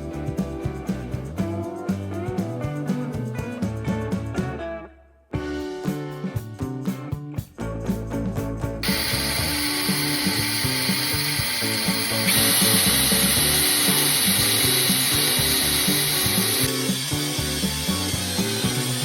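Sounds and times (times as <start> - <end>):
power tool hissing: 8.8 - 19.0.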